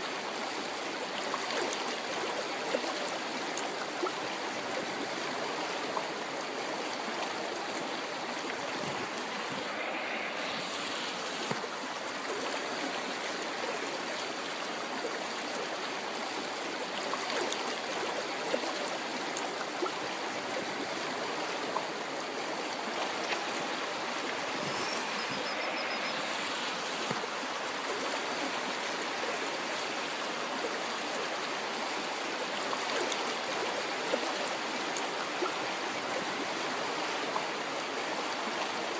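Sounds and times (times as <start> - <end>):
river water rushing: 0.0 - 38.9.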